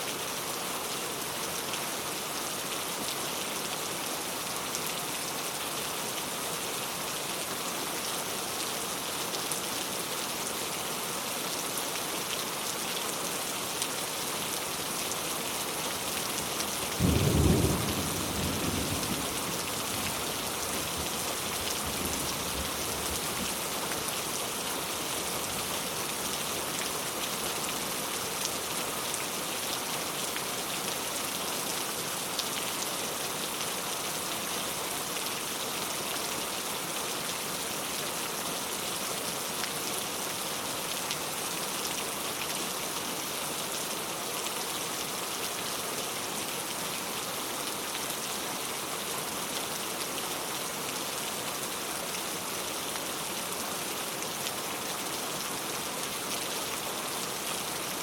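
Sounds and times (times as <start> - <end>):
heavy rain hissing: 16.8 - 26.2.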